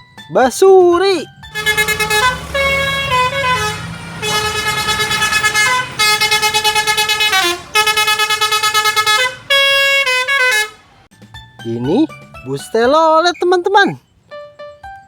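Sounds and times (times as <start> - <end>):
bus horn playing a tune: 1.5 - 11.1.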